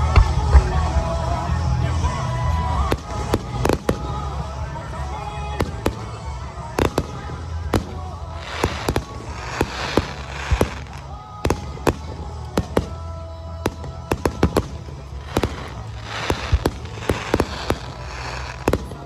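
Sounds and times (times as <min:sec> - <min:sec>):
fireworks bangs: 0:00.0 - 0:19.0
fireworks hissing crackle: 0:00.0 - 0:19.0.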